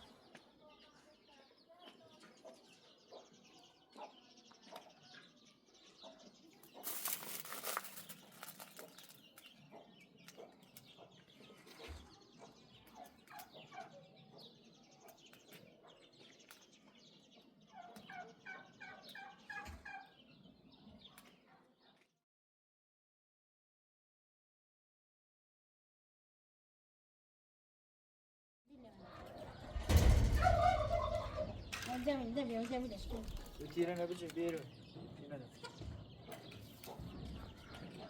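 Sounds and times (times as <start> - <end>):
repeated animal calls: 29.0 - 32.2.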